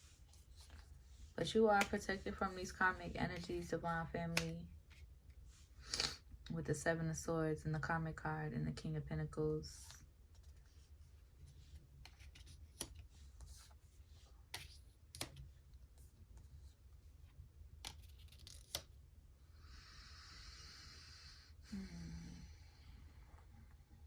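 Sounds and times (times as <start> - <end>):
cards shuffling: 12.0 - 13.8, 14.5 - 15.5, 17.8 - 19.0
cards tapping and clicking: 14.5 - 15.5.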